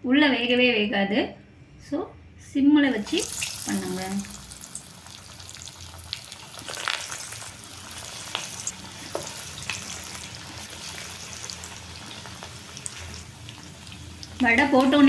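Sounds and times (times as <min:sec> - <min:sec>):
fritters sizzling in hot oil: 0:02.9 - 0:15.0
oil crackling and popping: 0:03.0 - 0:15.0.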